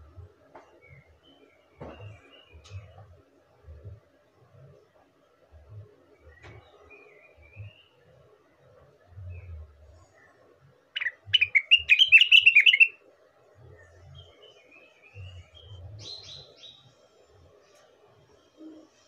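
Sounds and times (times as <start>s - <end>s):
bird chirping and whistling: 11.0s - 13.0s.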